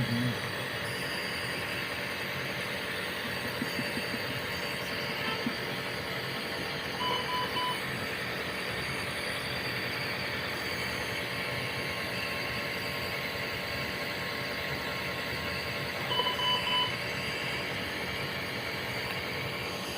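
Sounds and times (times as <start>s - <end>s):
monitor electronic beeps: 6.8s - 7.8s, 16.0s - 17.1s.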